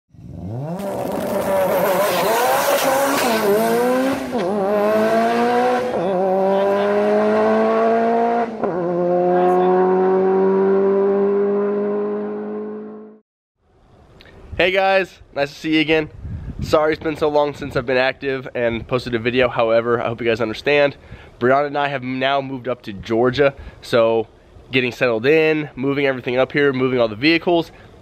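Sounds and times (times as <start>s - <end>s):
car engine accelerating hard: 0.2s - 13.2s.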